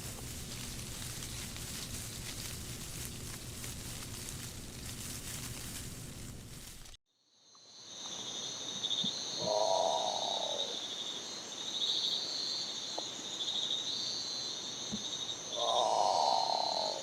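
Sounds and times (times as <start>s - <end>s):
lower rasping bird call: 9.4s - 10.8s, 15.6s - 17.0s.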